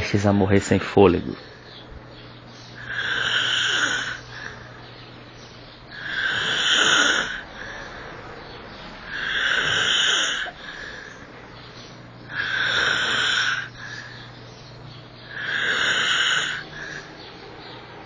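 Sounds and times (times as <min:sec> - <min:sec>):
man snoring loudly: 0:02.8 - 0:04.6, 0:05.9 - 0:08.0, 0:09.0 - 0:11.1, 0:12.3 - 0:14.0, 0:15.3 - 0:17.1
soft breath: 0:07.0 - 0:08.5, 0:09.4 - 0:11.4, 0:13.6 - 0:14.5.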